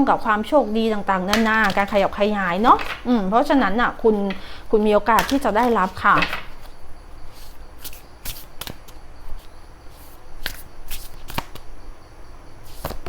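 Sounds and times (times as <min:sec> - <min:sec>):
cards being shuffled by hand: 0:00.9 - 0:11.7, 0:12.6 - 0:13.0
card snaps: 0:05.2 - 0:06.7.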